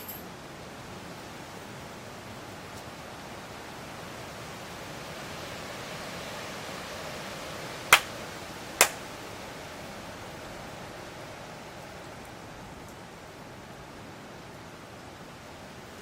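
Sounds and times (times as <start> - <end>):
wind rustling leaves: 0.3 - 16.0
sharp cracks: 7.9 - 8.1, 8.8 - 9.0.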